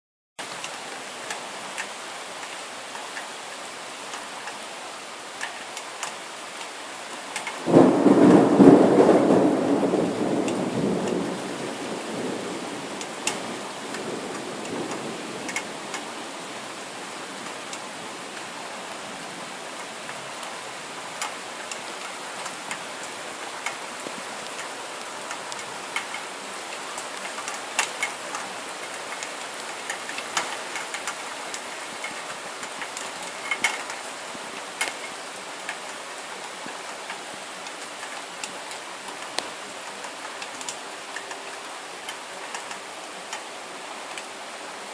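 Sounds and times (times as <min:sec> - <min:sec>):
steady rain: 0:00.4 - 0:44.9
thunder rumbling: 0:07.6 - 0:16.2
dripping ticks: 0:10.4 - 0:11.2, 0:13.0 - 0:16.1.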